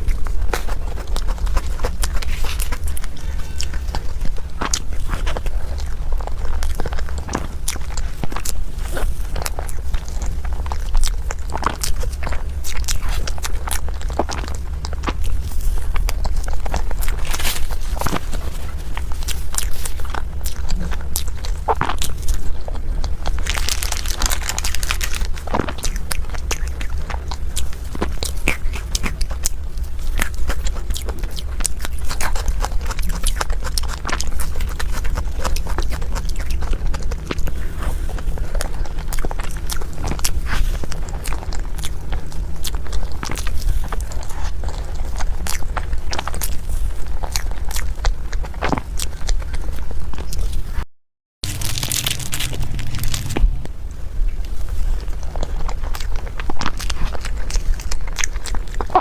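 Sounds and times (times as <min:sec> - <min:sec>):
person biting and chewing: 0:00.0 - 0:50.8, 0:51.4 - 0:59.0
steady low hum: 0:00.0 - 0:59.0.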